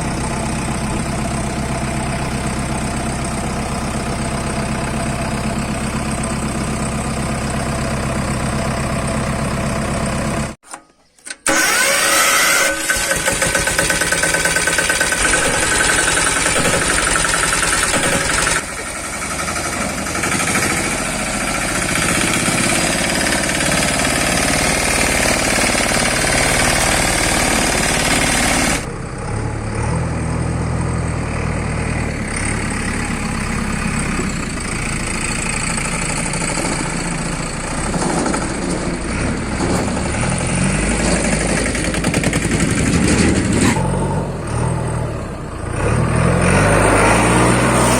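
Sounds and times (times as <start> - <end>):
heavy machinery engines running: 0.0 - 47.9.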